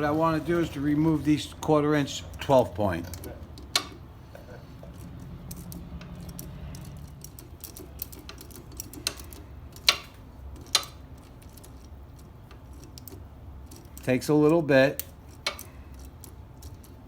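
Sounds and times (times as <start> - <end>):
ratchet clicking: 4.8 - 17.0.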